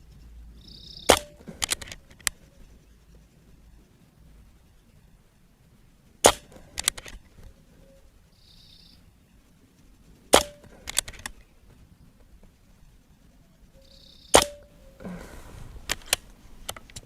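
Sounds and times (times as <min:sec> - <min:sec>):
quick clicks: 0:00.8 - 0:03.2, 0:06.2 - 0:07.6, 0:10.2 - 0:11.6, 0:14.3 - 0:17.0
air rifle shot crack: 0:01.1 - 0:02.0, 0:06.2 - 0:07.2, 0:10.3 - 0:11.3, 0:14.3 - 0:16.3.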